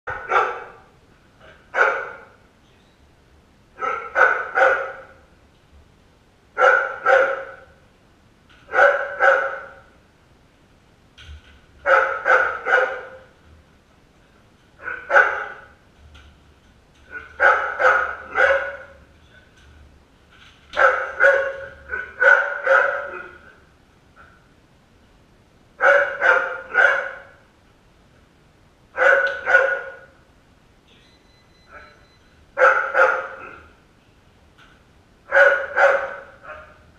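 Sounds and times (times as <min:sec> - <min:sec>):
dog barking: 0:00.1 - 0:02.4, 0:03.8 - 0:05.2, 0:06.6 - 0:07.8, 0:08.7 - 0:09.9, 0:11.8 - 0:13.3, 0:14.8 - 0:15.8, 0:17.1 - 0:19.0, 0:20.8 - 0:23.4, 0:25.8 - 0:27.4, 0:29.0 - 0:30.2, 0:31.7 - 0:32.0, 0:32.6 - 0:33.7, 0:35.3 - 0:36.8.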